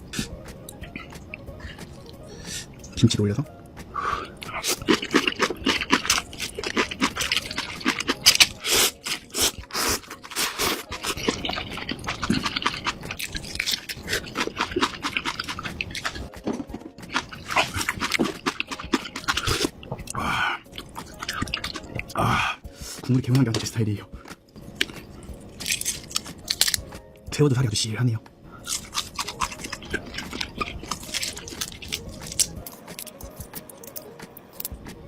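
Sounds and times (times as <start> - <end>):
noodles slurped and chewed: 4.4 - 16.3, 17.0 - 22.2, 24.8 - 26.8, 28.6 - 34.0.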